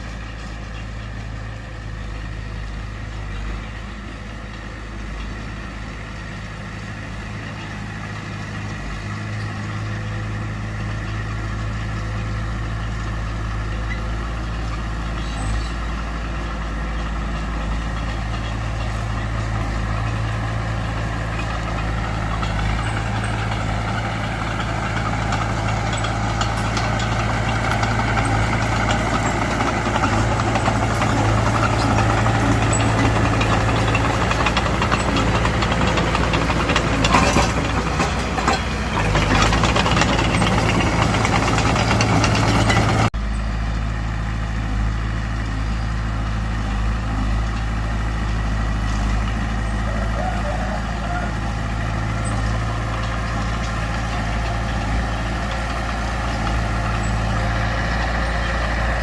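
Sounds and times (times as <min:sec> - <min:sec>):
bulldozer diesel engine: 0:00.0 - 0:59.0
metallic clanks: 0:21.3 - 0:43.1.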